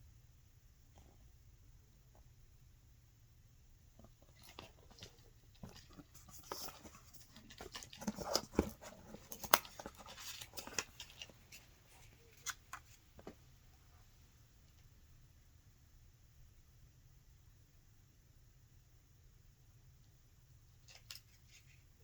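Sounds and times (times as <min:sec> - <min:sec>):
paper rustling and crinkling: 0:04.1 - 0:13.4.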